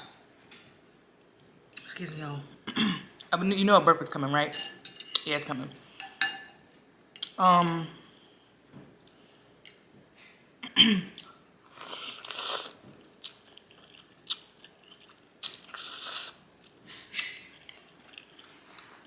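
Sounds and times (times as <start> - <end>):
chewing: 11.2 - 19.0.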